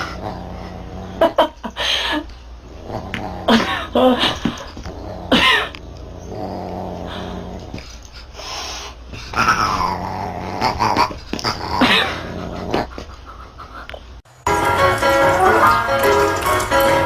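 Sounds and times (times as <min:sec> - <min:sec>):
dog growling: 0:00.0 - 0:01.5, 0:02.6 - 0:07.9, 0:09.3 - 0:13.1.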